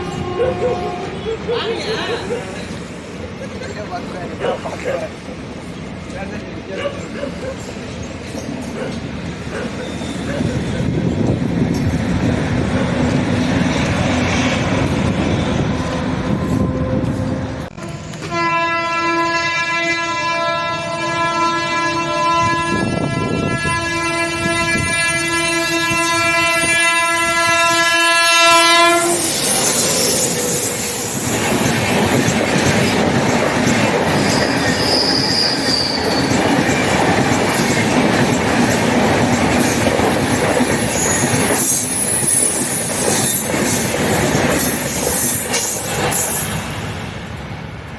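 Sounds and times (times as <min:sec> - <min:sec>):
locomotive horn blast: 0:00.0 - 0:01.5, 0:16.3 - 0:29.3
train wheels clattering on rails: 0:02.6 - 0:20.0, 0:29.2 - 0:47.9
high wheel squeal: 0:09.7 - 0:10.9, 0:28.9 - 0:31.8, 0:34.1 - 0:36.5, 0:40.6 - 0:46.8.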